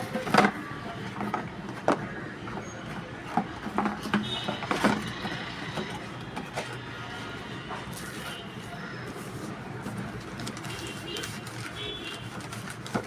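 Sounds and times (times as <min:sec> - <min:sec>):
packaging rustling and knocking: 0:09.8 - 0:13.0.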